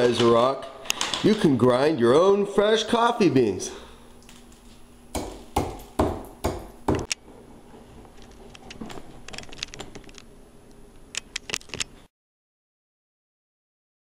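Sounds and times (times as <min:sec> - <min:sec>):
rock pounding coffee beans: 0:05.1 - 0:07.1.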